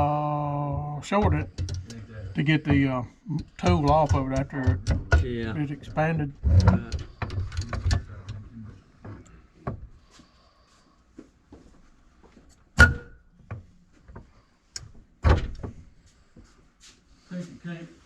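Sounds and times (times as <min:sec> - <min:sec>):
metal tools clunking: 0:00.8 - 0:08.5
sharp loud knocks: 0:02.7 - 0:07.8.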